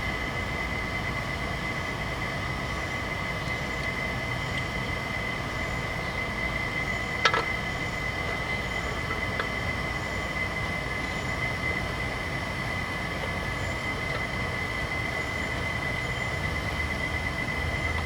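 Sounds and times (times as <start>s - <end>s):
background hum: 0.0s - 18.0s.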